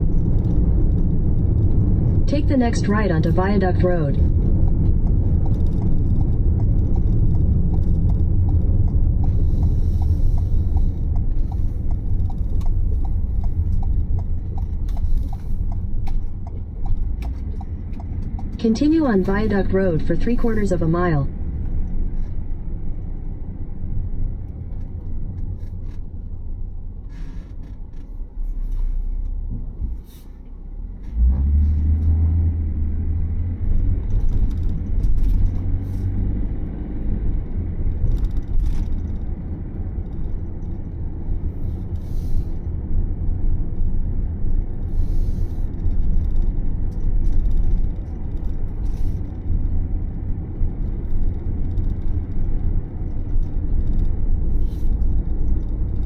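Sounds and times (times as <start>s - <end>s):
van engine and tyres rumbling: 0.0s - 56.0s
small rattles and clicks: 4.2s - 18.9s, 24.4s - 26.6s, 33.7s - 36.1s, 37.3s - 56.0s.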